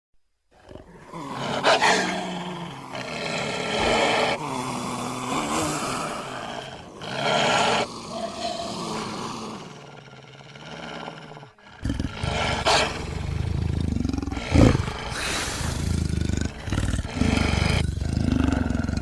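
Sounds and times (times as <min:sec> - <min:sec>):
animals growling and roaring: 0:00.5 - 0:19.0.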